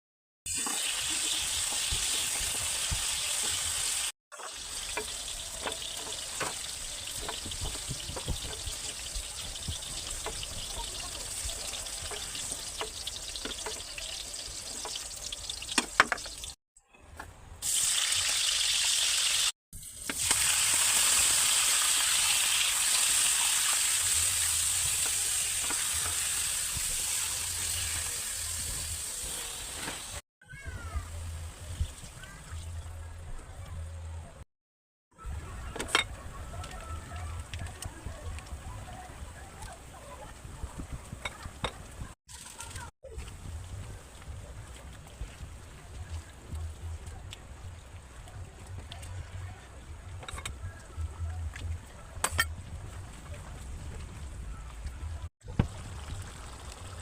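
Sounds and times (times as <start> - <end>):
food sizzling in hot oil: 0.5 - 16.6, 17.6 - 30.2, 55.4 - 57.0
oil popping: 4.4 - 16.6, 55.4 - 57.0.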